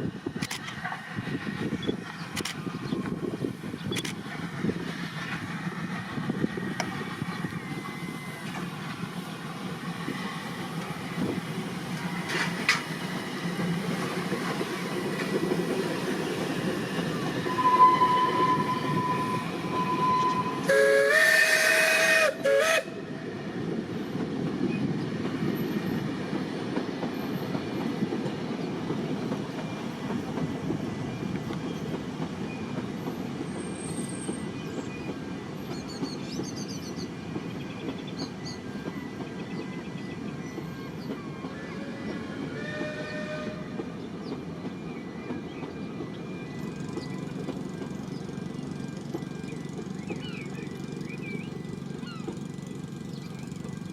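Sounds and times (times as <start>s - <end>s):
train wheels rumbling: 0.0s - 53.9s
single-pitch whistle: 17.4s - 22.8s
steam whistle blast: 17.4s - 23.1s, 41.5s - 43.8s.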